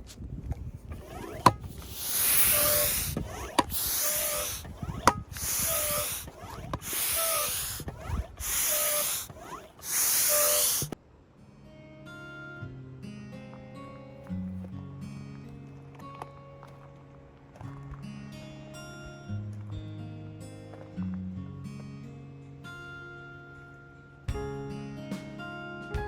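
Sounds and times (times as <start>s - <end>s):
hand air pump hissing: 0.8s - 11.0s
pump clicks: 0.9s - 11.0s.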